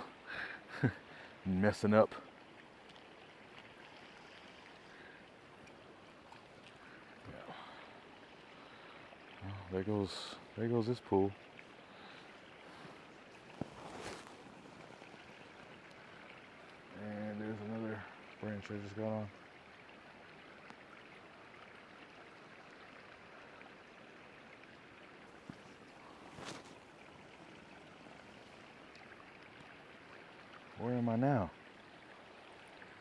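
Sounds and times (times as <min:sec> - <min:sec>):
flowing creek: 0:00.0 - 0:33.0
light tick: 0:05.6 - 0:06.8
water sloshing from wading: 0:11.8 - 0:15.7.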